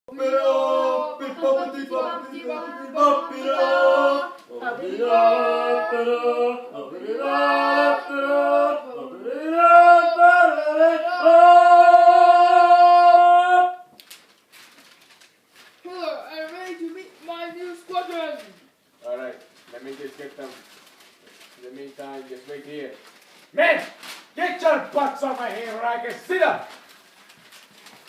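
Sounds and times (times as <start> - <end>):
voices singing in harmony: 0.1 - 13.9.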